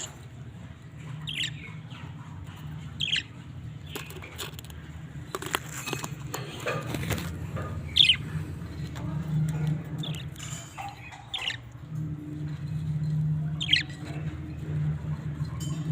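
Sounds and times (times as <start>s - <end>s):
budgerigars chirping: 1.0s - 4.4s, 7.6s - 8.6s, 9.5s - 14.6s.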